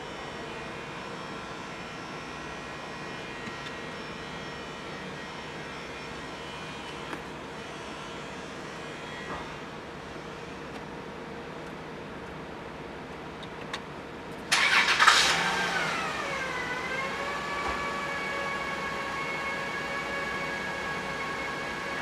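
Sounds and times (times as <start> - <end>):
car engine starting and idling: 14.5 - 21.9.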